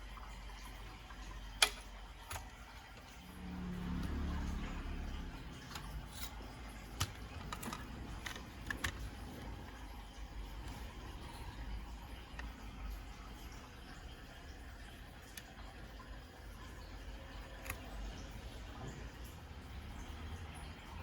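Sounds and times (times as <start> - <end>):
small mechanical clicks: 1.5 - 13.1, 17.2 - 18.6
low whirr: 3.1 - 13.3.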